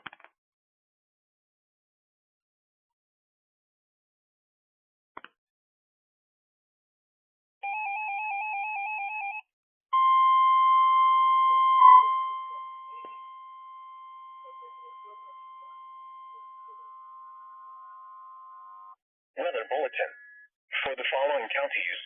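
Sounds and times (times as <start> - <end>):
steady alarm tone: 10.0 - 19.0
warbling two-tone beep: 10.0 - 19.0.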